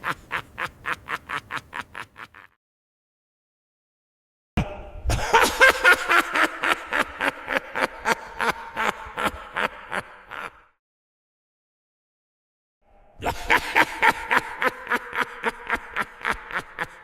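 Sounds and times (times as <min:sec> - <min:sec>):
high-pitched evil laugh: 0:00.0 - 0:02.6, 0:05.1 - 0:10.7, 0:13.2 - 0:17.0.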